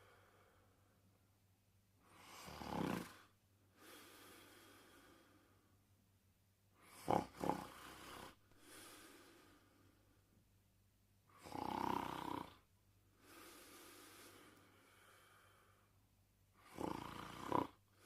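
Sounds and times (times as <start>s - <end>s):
person snoring: 2.0s - 5.4s, 6.8s - 9.7s, 11.3s - 15.7s, 16.6s - 18.0s
sharp snort: 6.8s - 8.4s.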